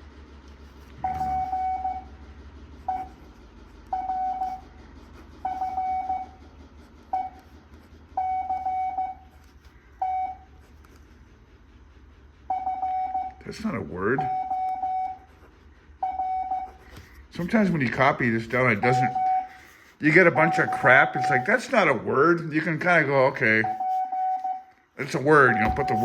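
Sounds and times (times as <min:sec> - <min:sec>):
morse code beeps: 0:01.0 - 0:02.1, 0:05.4 - 0:06.4, 0:07.1 - 0:07.4, 0:08.2 - 0:09.3, 0:10.0 - 0:10.5, 0:12.5 - 0:13.4, 0:14.2 - 0:15.3, 0:16.0 - 0:16.8, 0:18.7 - 0:21.6, 0:23.5 - 0:26.0.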